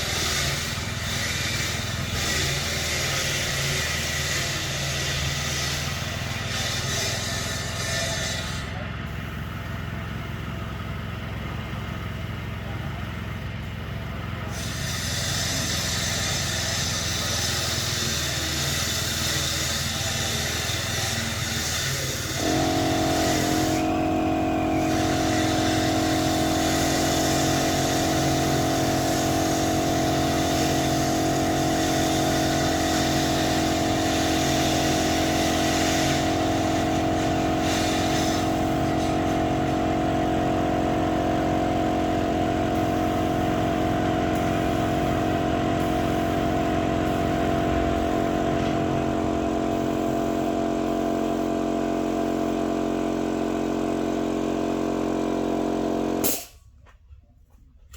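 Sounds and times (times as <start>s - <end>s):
hiss: 0.0s - 9.8s, 14.4s - 51.5s, 56.2s - 56.6s
pitched motor hum: 0.0s - 56.5s
steady mechanical running: 0.0s - 56.6s.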